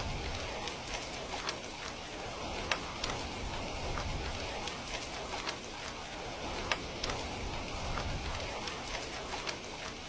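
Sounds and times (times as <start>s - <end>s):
rain hiss: 0.0s - 10.0s
raindrop ticks: 0.0s - 10.0s.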